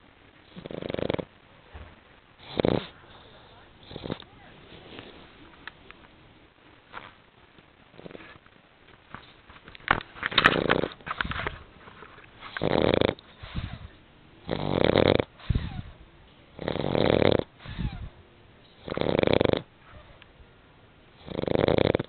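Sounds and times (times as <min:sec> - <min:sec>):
soft breaths: 0:00.3 - 0:20.5
dog snoring: 0:00.4 - 0:04.4, 0:07.9 - 0:08.4, 0:10.4 - 0:11.5, 0:12.4 - 0:18.1, 0:18.8 - 0:20.2, 0:21.1 - 0:22.0.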